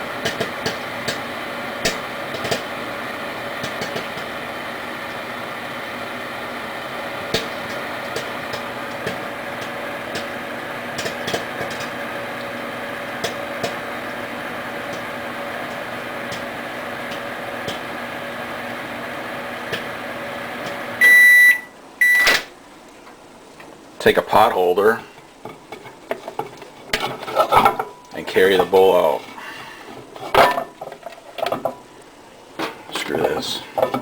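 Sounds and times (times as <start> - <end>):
popcorn kernels popping: 0.0 - 2.8, 3.5 - 4.4, 7.2 - 12.5, 13.1 - 14.2, 14.8 - 18.0
microwave oven running: 0.0 - 24.0
microwave timer beeping: 21.0 - 22.5.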